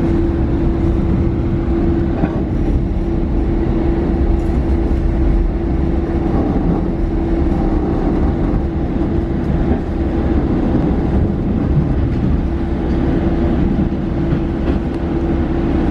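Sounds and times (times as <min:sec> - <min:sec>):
diesel railcar rumble and hum: 0:00.0 - 0:15.9.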